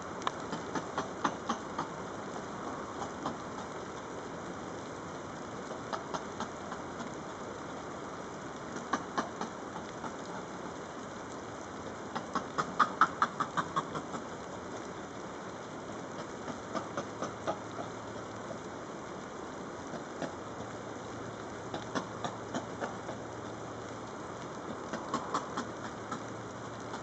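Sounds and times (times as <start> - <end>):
steady hiss: 0.0 - 27.0
animal clicking call: 0.2 - 2.0, 3.0 - 3.7, 5.7 - 7.2, 8.8 - 10.5, 12.1 - 14.3, 16.2 - 18.0, 21.7 - 23.3, 24.7 - 27.0.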